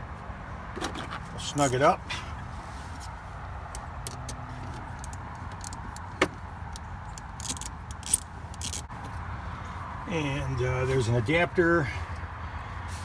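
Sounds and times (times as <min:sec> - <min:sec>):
wrench clicking and tapping: 0:06.7 - 0:08.9.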